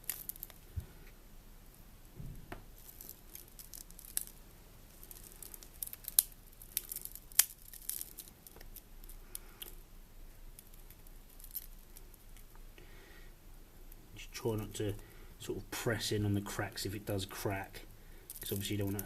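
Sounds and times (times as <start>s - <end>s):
glass snapping and crackling: 0.0s - 0.6s, 2.2s - 9.8s, 10.5s - 12.6s, 18.3s - 19.0s.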